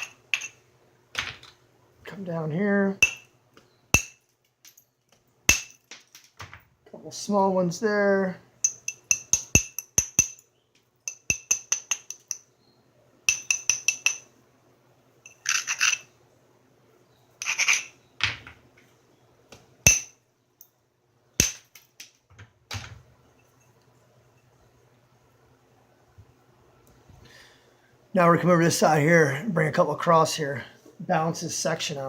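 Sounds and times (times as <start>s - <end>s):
stone scraping strokes: 17.4s - 18.0s.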